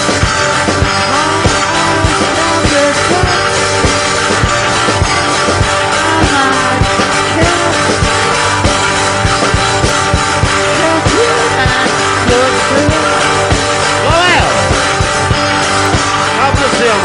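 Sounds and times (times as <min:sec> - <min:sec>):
punk rock music: 0:00.0 - 0:17.0.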